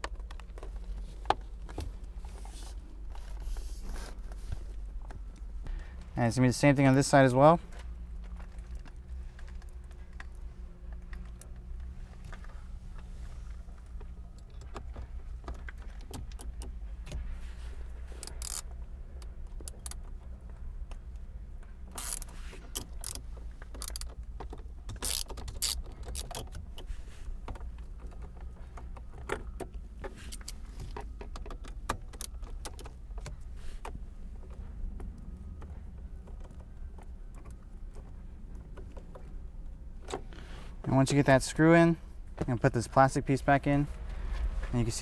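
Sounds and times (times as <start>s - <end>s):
ratchet clicking: 18.1s - 20.1s, 21.9s - 24.2s, 24.9s - 26.6s, 30.3s - 30.6s.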